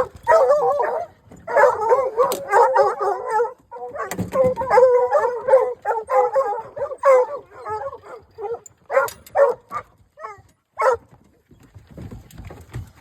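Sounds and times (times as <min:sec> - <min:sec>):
hounds bawling and howling: 0:00.0 - 0:11.0.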